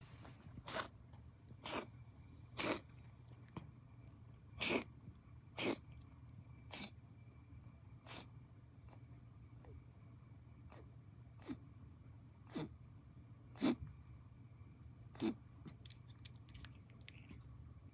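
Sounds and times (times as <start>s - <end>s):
cat reverse sneezing: 1.6s - 1.9s, 2.6s - 2.8s, 4.6s - 4.9s, 5.6s - 5.8s, 12.5s - 12.7s, 13.6s - 13.8s.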